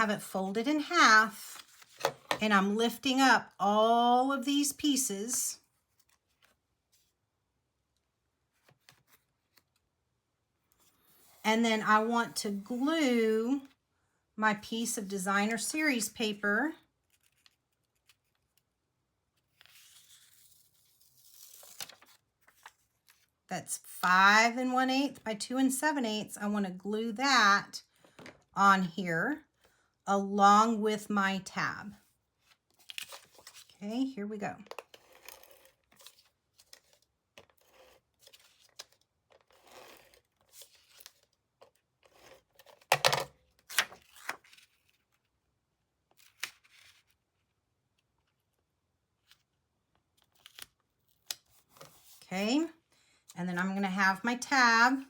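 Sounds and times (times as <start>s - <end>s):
paper rustling: 19.4s - 23.3s, 43.7s - 45.3s.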